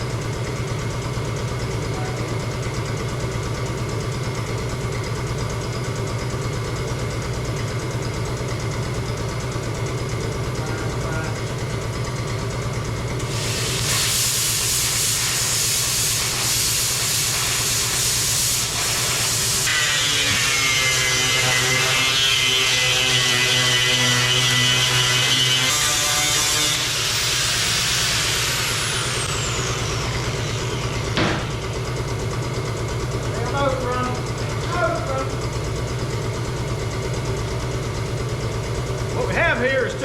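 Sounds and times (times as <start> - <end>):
plasma cutter hissing: 13.3 - 23.8
plasma cutter whine: 13.3 - 31.6.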